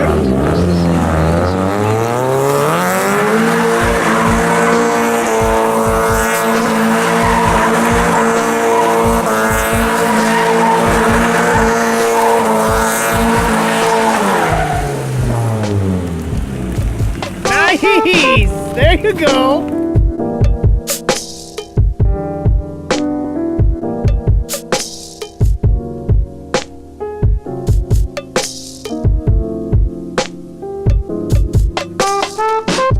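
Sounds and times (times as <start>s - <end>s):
tyres squealing: 0.0s - 19.6s
car engine revving: 0.0s - 19.9s.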